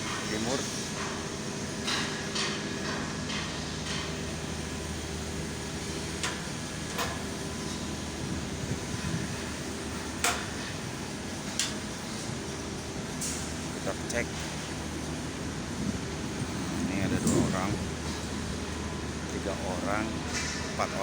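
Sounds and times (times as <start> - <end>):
wind on microphone: 8.2 - 9.5, 15.4 - 18.2.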